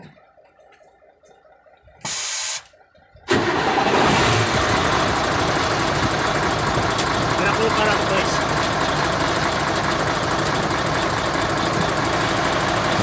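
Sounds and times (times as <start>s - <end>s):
diesel engine starting: 1.9s - 13.0s
short hiss: 2.0s - 2.7s.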